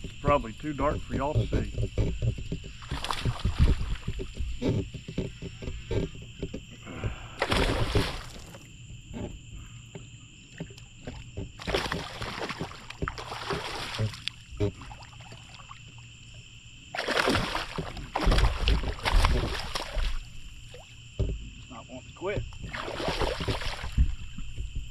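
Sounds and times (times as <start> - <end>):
fish thrashing water splashing: 2.0 - 4.4, 7.0 - 8.6, 11.6 - 16.0, 16.9 - 21.0, 22.6 - 24.4.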